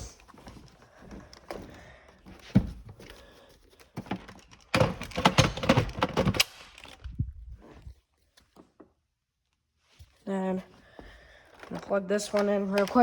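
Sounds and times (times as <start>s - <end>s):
plastic parts clattering: 2.4s - 7.2s, 11.5s - 13.0s
plastic parts clicking and knocking: 2.4s - 7.2s, 11.5s - 13.0s.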